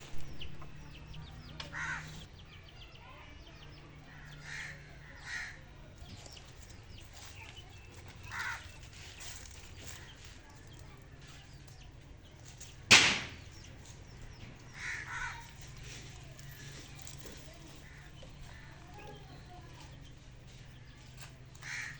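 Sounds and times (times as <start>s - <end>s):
birds calling: 0.0s - 21.9s
loud sharp sound: 12.9s - 13.6s.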